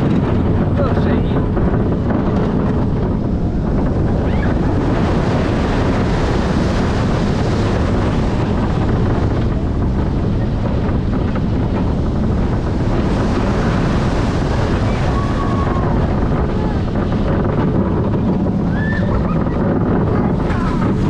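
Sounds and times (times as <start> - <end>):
wind buffeting microphone: 0.0 - 21.0.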